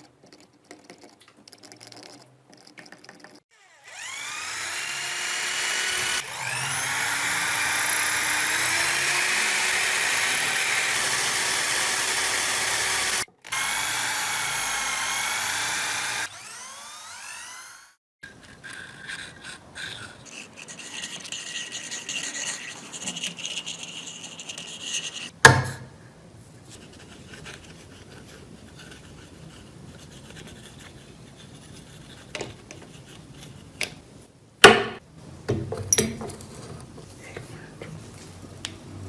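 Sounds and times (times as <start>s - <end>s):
hand scraping and rubbing: 18.2s - 25.4s, 26.4s - 34.1s.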